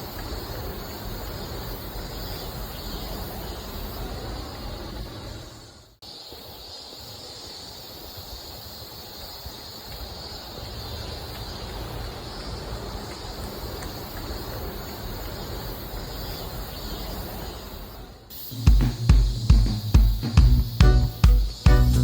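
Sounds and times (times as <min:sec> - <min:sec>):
steady high hiss: 0:00.0 - 0:22.0.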